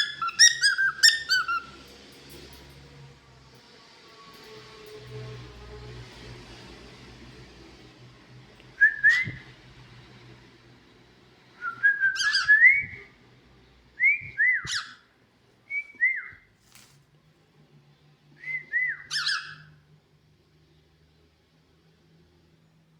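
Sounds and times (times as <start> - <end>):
cockatiel whistling: 0.0 - 1.8, 8.8 - 9.4, 11.7 - 13.1, 14.0 - 15.0, 15.7 - 16.5, 18.4 - 19.7.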